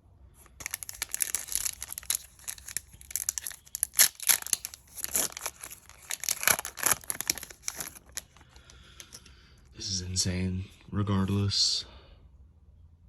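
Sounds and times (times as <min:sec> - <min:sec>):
foil wrapper crinkling and tearing: 0:00.4 - 0:09.1.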